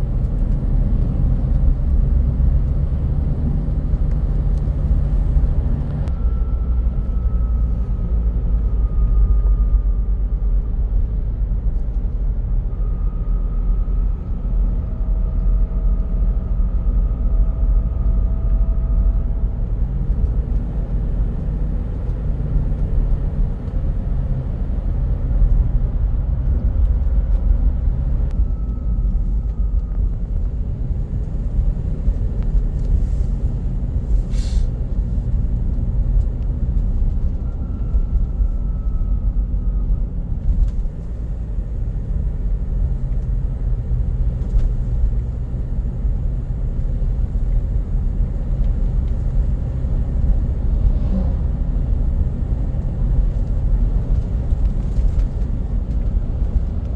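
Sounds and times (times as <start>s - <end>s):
steady low rumble: 0.0s - 56.9s
short hiss: 34.3s - 34.7s.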